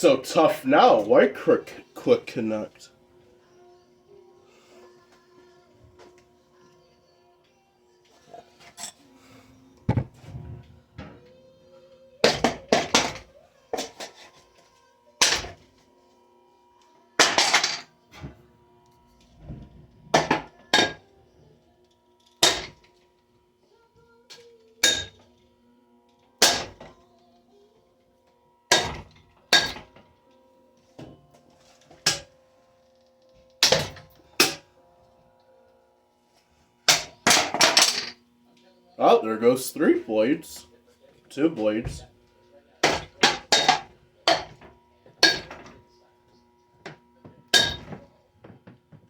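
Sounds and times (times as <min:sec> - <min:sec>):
ceiling fan being smashed: 0:09.9 - 0:11.2, 0:12.2 - 0:14.4, 0:15.2 - 0:15.7, 0:17.2 - 0:18.4, 0:19.4 - 0:21.1, 0:22.4 - 0:23.0, 0:24.8 - 0:25.3, 0:26.4 - 0:27.0, 0:28.7 - 0:30.1, 0:31.9 - 0:32.4, 0:33.6 - 0:34.7, 0:36.9 - 0:38.2, 0:42.8 - 0:45.9, 0:46.8 - 0:48.8.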